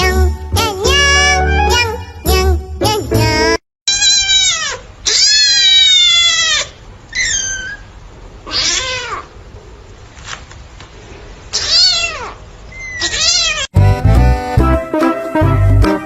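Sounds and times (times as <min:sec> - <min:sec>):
jingly music: 0:00.0 - 0:03.6, 0:13.8 - 0:16.0
cat meowing loudly: 0:03.9 - 0:09.3, 0:11.5 - 0:13.7.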